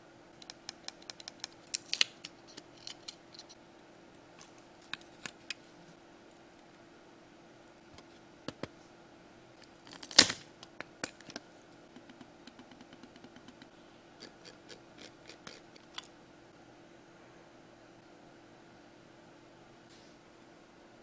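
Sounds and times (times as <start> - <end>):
loud sharp plastic crack: 1.6 - 2.2, 9.8 - 11.3.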